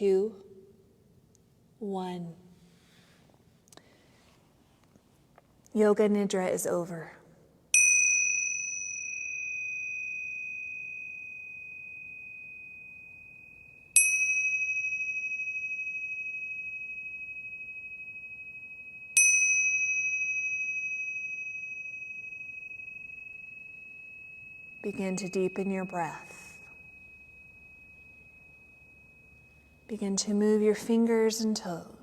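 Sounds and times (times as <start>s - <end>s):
bell ringing: 7.8s - 29.9s.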